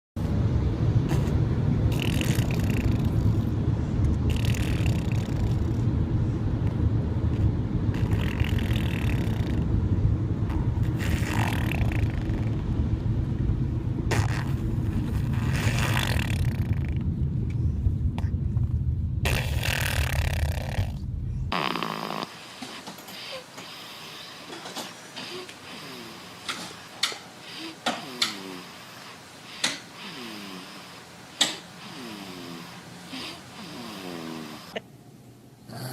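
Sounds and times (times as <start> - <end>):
low rumble: 0.2 - 26.9
baby snoring: 1.1 - 3.5, 4.3 - 5.8, 7.9 - 9.7, 10.5 - 12.6, 14.1 - 17.0, 19.3 - 34.8, 35.7 - 35.9.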